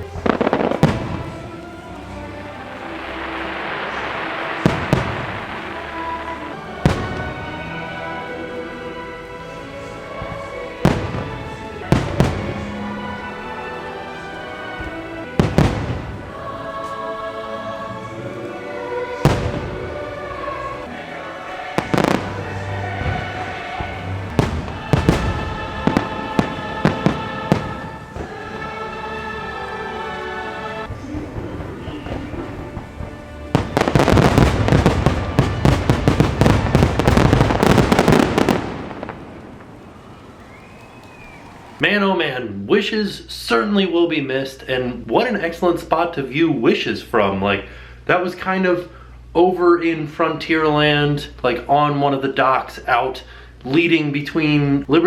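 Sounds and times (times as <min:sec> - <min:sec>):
fireworks bangs: 0:00.0 - 0:08.5, 0:10.2 - 0:13.6, 0:14.7 - 0:16.7, 0:19.2 - 0:28.9, 0:30.8 - 0:41.8
rolling echo: 0:00.0 - 0:17.1, 0:18.1 - 0:41.9
orchestral music over loudspeakers: 0:00.0 - 0:39.4.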